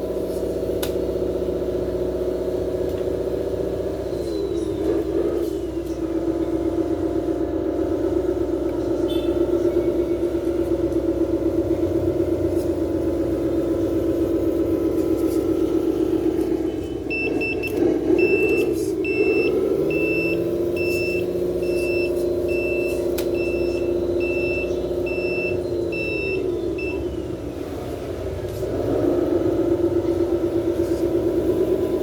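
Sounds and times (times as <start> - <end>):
simulated diesel engine drone: 0.0 - 32.0
reversing beeper: 16.6 - 27.5.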